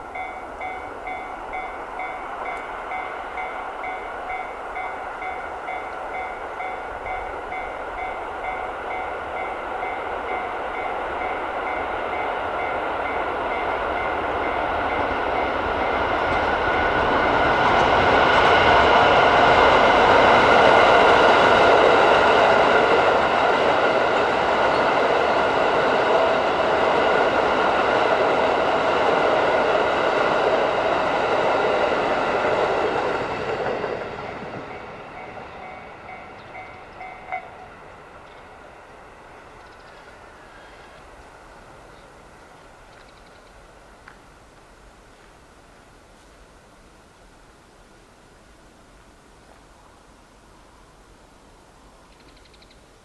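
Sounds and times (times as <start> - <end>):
level crossing warning bell: 0.0 - 17.0, 32.6 - 38.7
train passing: 0.0 - 53.0.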